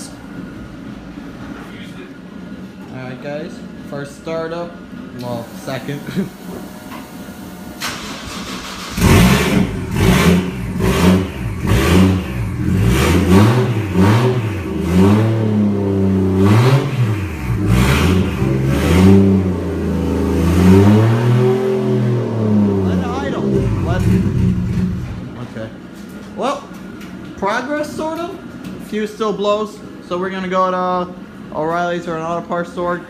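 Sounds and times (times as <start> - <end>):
car engine starting and revving: 7.8 - 25.4.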